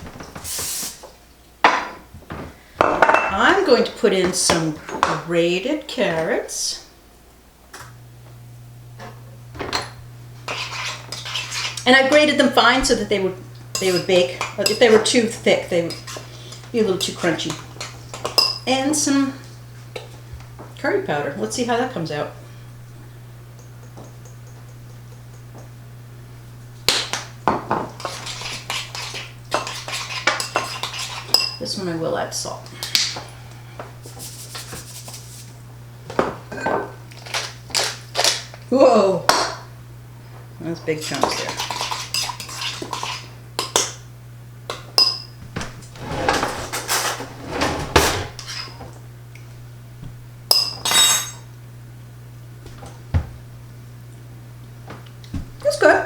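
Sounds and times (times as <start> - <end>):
utensil scraping baking dish: 10.5 - 12.0, 28.0 - 31.4, 46.0 - 48.7.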